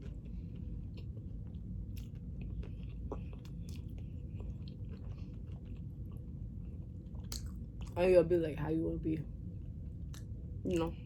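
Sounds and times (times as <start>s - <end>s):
person chewing food: 0.0s - 8.0s.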